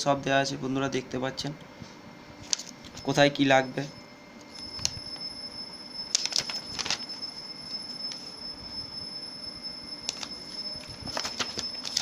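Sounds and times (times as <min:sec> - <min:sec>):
high-pitched whine: 0:02.8 - 0:12.0
paper and packaging rustling: 0:06.1 - 0:07.2, 0:10.1 - 0:12.0.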